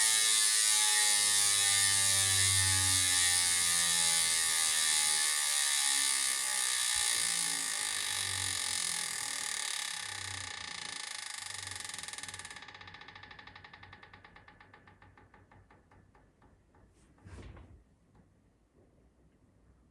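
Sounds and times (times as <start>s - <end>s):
freehub buzz: 0.0s - 13.6s
ratchet clicks: 0.0s - 16.6s.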